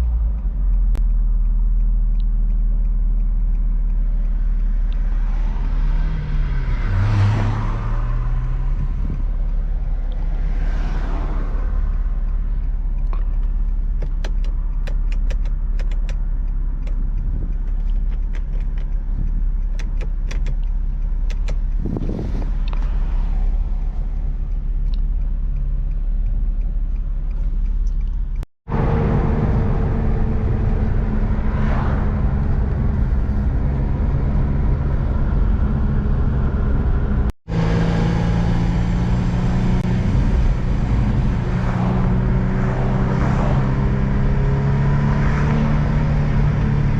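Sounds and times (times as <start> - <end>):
car engine running while driving: 0.0 - 46.9.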